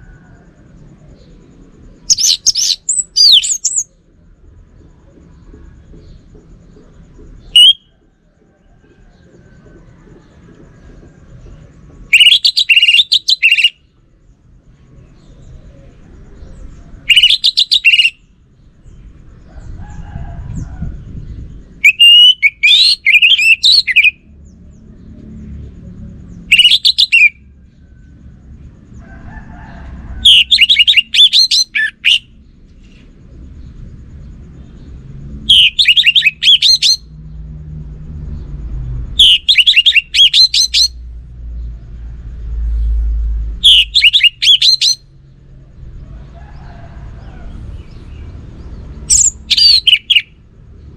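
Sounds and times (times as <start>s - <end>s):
low background rumble: 0.0s - 50.9s
thrush singing: 35.4s - 37.1s, 39.2s - 41.0s, 42.8s - 45.1s, 47.2s - 50.5s.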